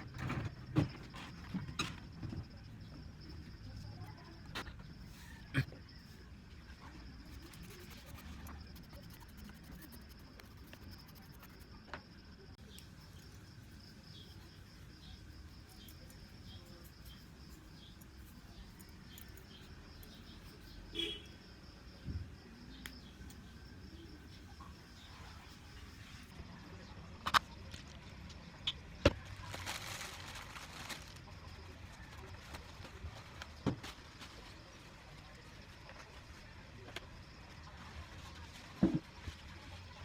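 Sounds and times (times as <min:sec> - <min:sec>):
faint scratches and taps: 0:07.2 - 0:12.1.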